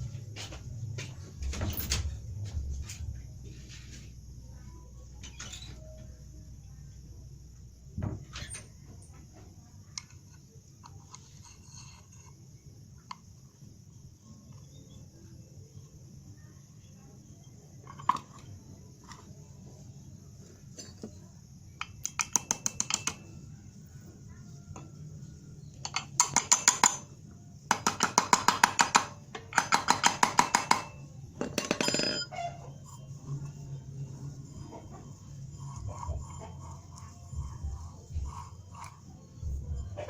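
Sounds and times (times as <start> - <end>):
ratchet wrench clicking: 21.8 - 23.2.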